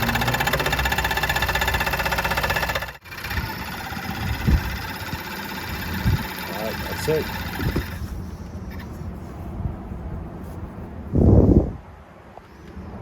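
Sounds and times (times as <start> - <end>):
scroll saw cutting plywood: 0.0 - 8.0.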